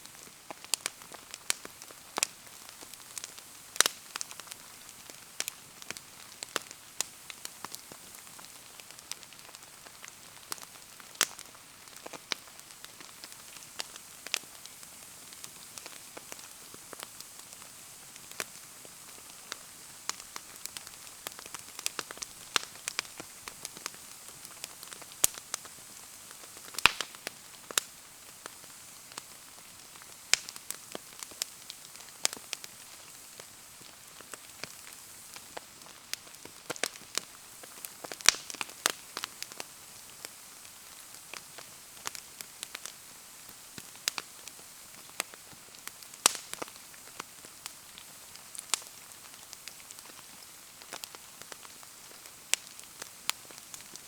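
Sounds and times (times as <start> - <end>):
campfire crackling and popping: 0.0 - 54.0
rain falling: 7.7 - 42.8.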